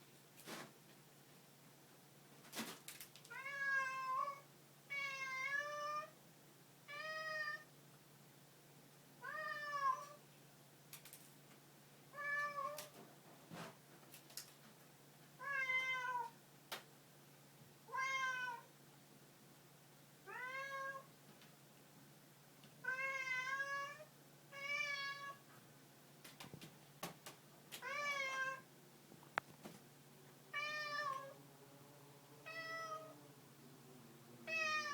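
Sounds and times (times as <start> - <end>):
cat meowing: 3.3 - 6.1, 17.9 - 18.7, 22.8 - 25.4, 34.5 - 34.9.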